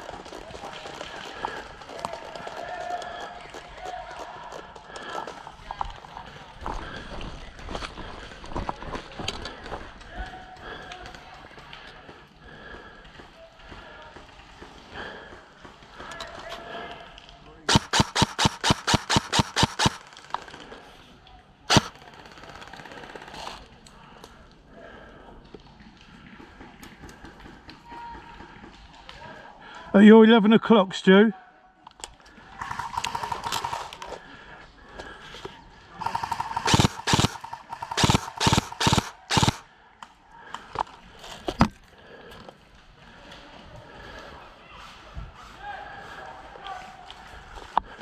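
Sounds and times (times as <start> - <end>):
airsoft gun shots: 17.7 - 20.1, 21.7 - 22.0, 36.0 - 39.6.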